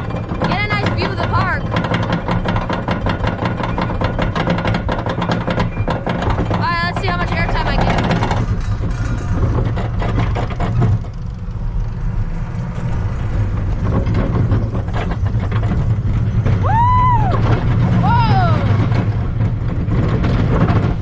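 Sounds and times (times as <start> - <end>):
roller coaster rumble: 0.0 - 21.0
track rattles and clacks: 0.0 - 21.0
rider yelling woo: 16.6 - 18.8.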